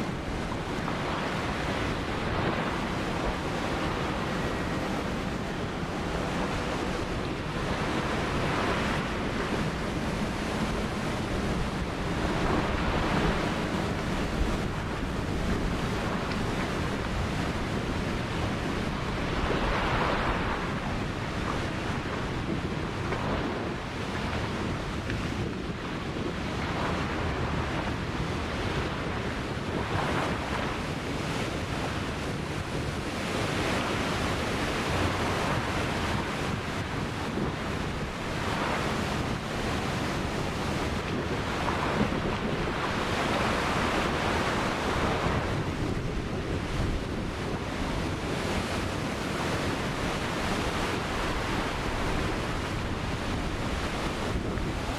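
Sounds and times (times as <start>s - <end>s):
ocean waves breaking: 0.0s - 54.9s.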